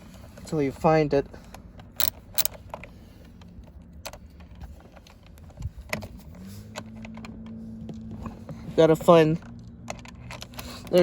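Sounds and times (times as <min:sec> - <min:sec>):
metal bolt clicking against hub: 0:02.0 - 0:02.7.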